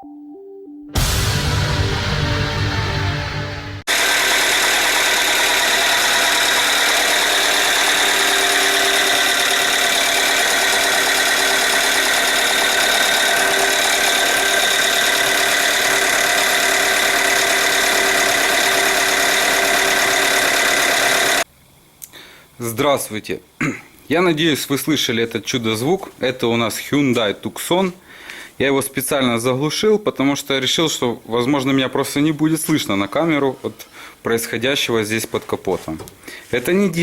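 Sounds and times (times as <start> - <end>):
steady engine whine: 3.8 - 21.4
petrol engine running: 3.8 - 21.5.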